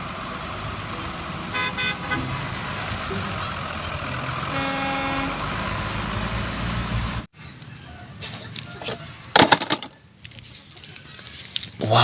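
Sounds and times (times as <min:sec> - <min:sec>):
loud vehicle engine: 0:00.0 - 0:08.6
horn honk: 0:01.4 - 0:02.6, 0:04.4 - 0:05.6
plastic toys clicking and knocking: 0:09.4 - 0:10.0.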